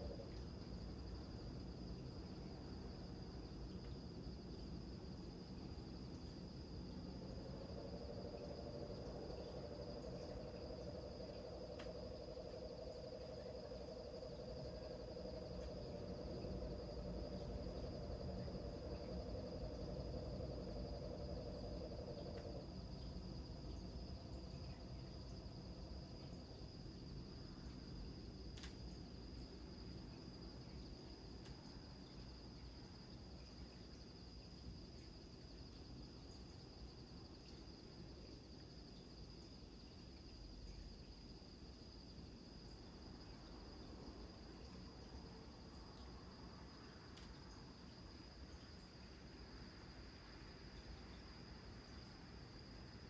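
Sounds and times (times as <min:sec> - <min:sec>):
crickets chirring: 0:00.0 - 0:53.0
low rumble of surf: 0:05.2 - 0:28.4.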